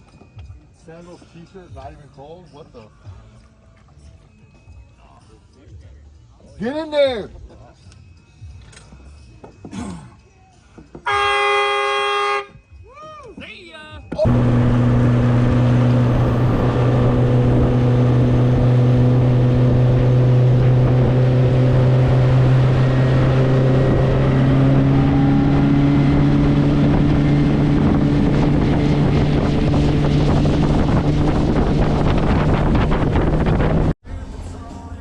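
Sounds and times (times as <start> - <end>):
outboard motor drone: 14.2 - 34.0
wind on microphone: 14.3 - 34.0.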